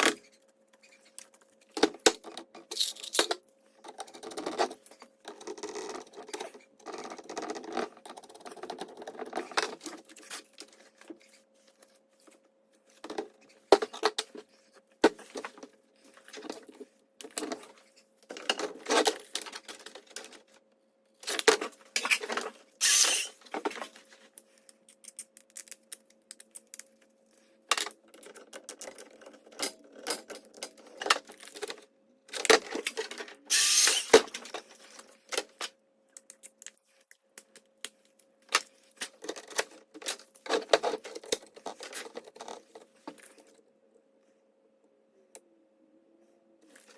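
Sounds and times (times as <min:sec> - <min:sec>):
faint steady hum: 0:00.0 - 0:46.9
small tools clicking and rattling: 0:00.8 - 0:11.2, 0:21.2 - 0:23.4, 0:27.7 - 0:34.7.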